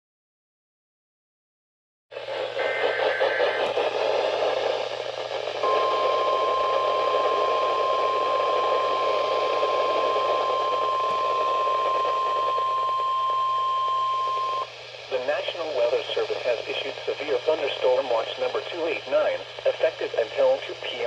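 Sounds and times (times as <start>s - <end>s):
radio static: 2.2s - 21.0s
steady warning alarm tone: 2.6s - 3.9s, 5.6s - 14.7s.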